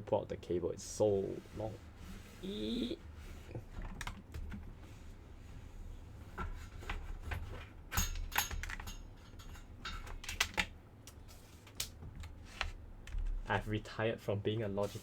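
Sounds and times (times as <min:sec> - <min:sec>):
keyboard being handled clicking: 0:10.0 - 0:13.4.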